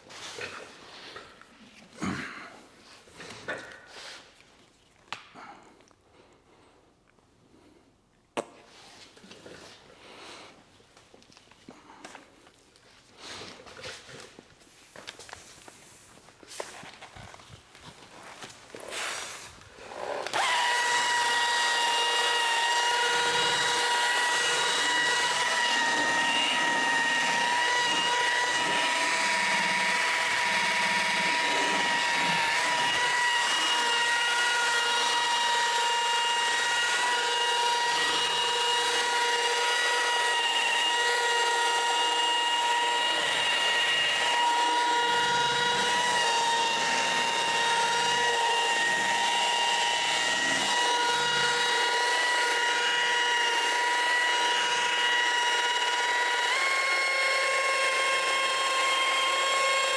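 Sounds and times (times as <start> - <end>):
car polisher high whine: 20.0 - 59.9.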